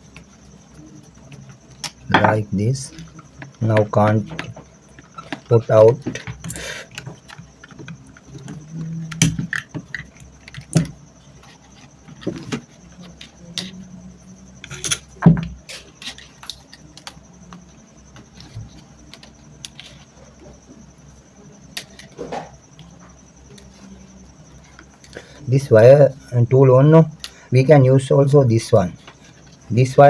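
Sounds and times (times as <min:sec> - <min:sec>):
faint high whine: 0:00.0 - 0:30.0
small metal parts rattling: 0:14.6 - 0:15.2.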